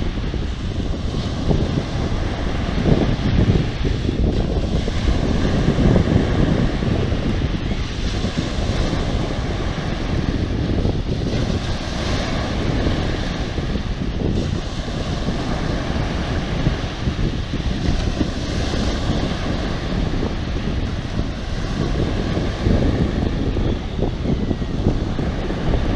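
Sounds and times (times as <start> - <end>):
sea waves washing: 0.0 - 25.9
wind buffeting microphone: 0.0 - 25.9.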